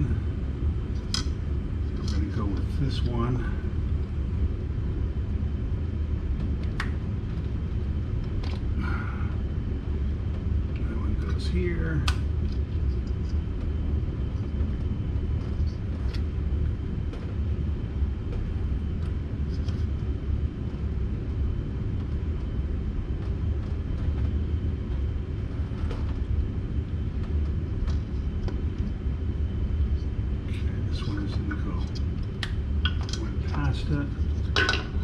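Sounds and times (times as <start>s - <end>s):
low rumble: 0.0s - 35.0s.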